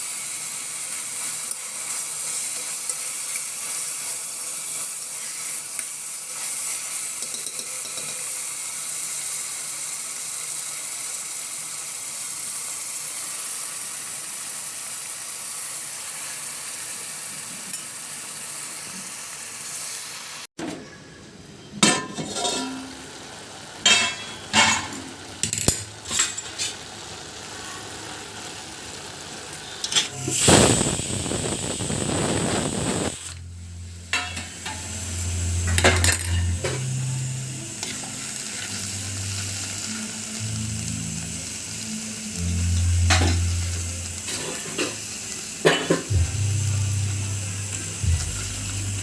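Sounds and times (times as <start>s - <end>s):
food sizzling in a pan: 0.0s - 20.5s, 21.9s - 49.0s
spoon clattering against pan: 7.2s - 8.2s.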